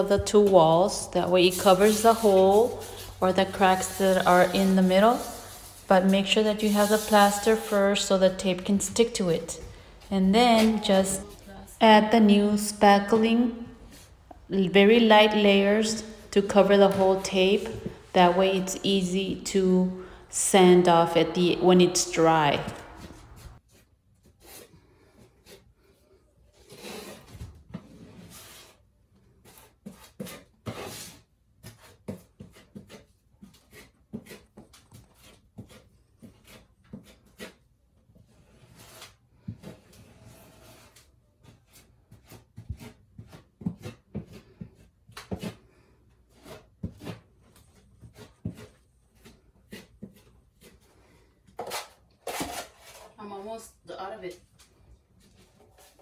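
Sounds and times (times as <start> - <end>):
putty knife scraping drywall: 0.1 - 11.4, 26.6 - 53.2.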